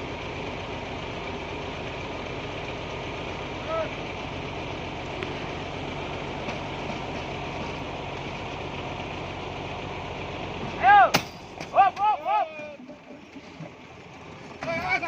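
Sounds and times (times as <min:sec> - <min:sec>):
diesel truck engine running: 0:00.0 - 0:15.0
loud shout: 0:10.8 - 0:12.8, 0:14.6 - 0:15.0.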